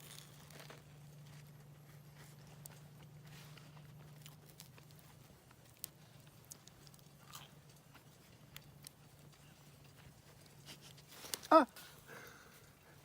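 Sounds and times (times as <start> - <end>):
campfire crackling: 4.0 - 12.9.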